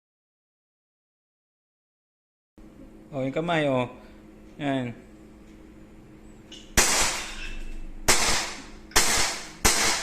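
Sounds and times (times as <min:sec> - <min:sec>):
airsoft gun shots: 0:06.8 - 0:07.3, 0:08.1 - 0:10.0.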